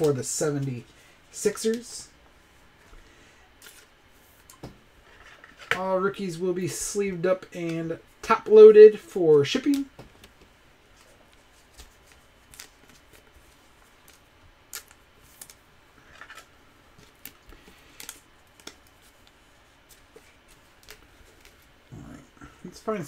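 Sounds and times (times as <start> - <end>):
cards clicking and rustling: 9.5 - 21.7.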